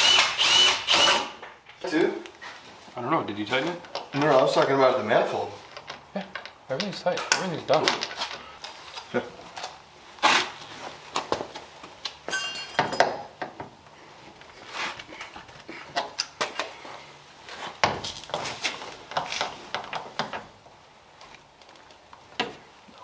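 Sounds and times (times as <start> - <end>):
metal tools and parts clinking: 12.3 - 13.3.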